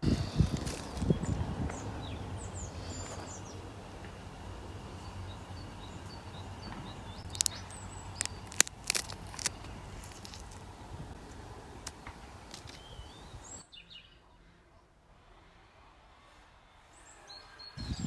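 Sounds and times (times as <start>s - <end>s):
birds chirping: 0.0s - 14.1s
sharp cracks: 7.2s - 10.6s
wet squelching of crushed fruit: 7.3s - 10.7s.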